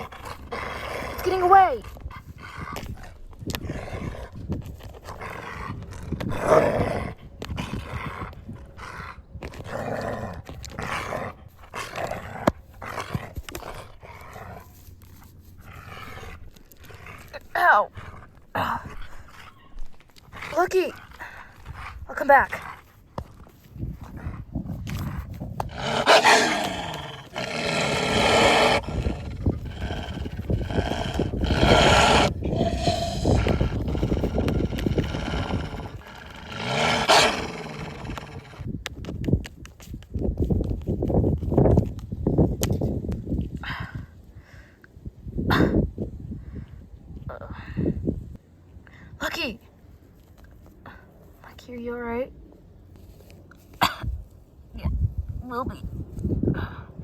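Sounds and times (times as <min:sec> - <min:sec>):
wolves growling and snarling: 0:00.0 - 0:38.7.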